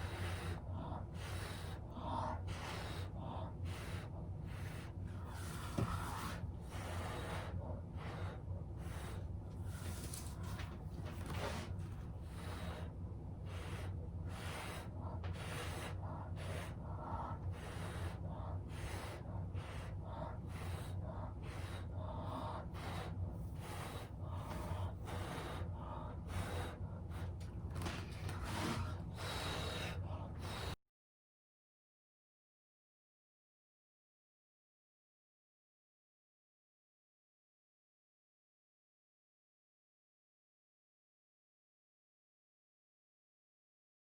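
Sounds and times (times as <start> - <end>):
steady low hum: 0.0 - 30.8.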